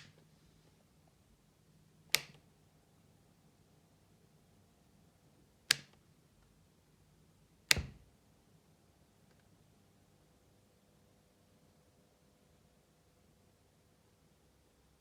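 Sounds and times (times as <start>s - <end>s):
sharp clicks: 2.1s - 2.4s, 5.7s - 6.0s.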